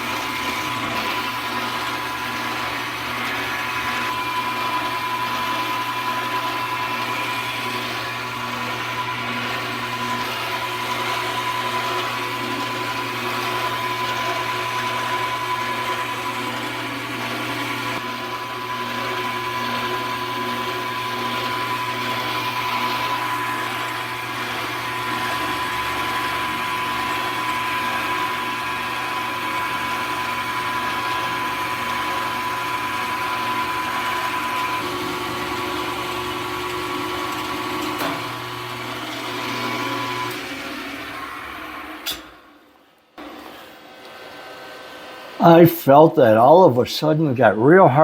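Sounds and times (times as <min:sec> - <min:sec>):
milling machine whining: 0:00.0 - 0:42.6.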